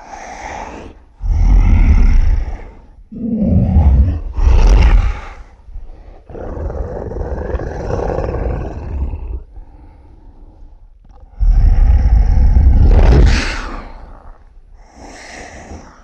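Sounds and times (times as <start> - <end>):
monster roars: 3.2 - 5.4, 6.3 - 9.5, 11.3 - 14.1.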